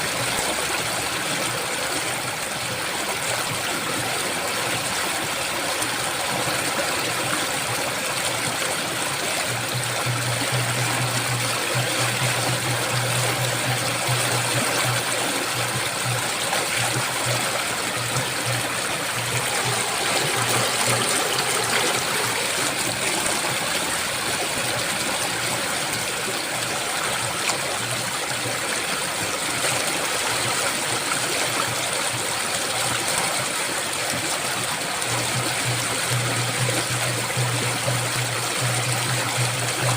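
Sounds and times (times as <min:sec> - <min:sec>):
river water rushing: 0:00.0 - 0:39.9
low steady hum: 0:05.2 - 0:28.5, 0:34.9 - 0:39.9.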